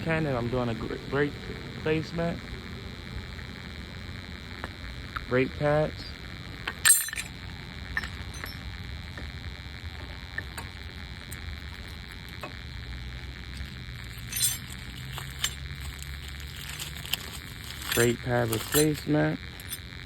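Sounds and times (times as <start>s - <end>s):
low steady hum: 0.0s - 20.0s
metal parts rattling: 6.6s - 8.7s, 13.5s - 19.9s
metallic clinks of tools: 6.7s - 7.4s, 8.0s - 8.7s, 13.6s - 19.8s.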